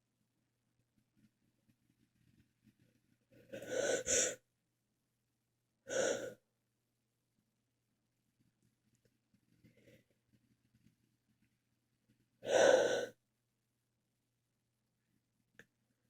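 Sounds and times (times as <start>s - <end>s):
gasping in-breath: 5.9s - 6.4s, 12.4s - 13.2s.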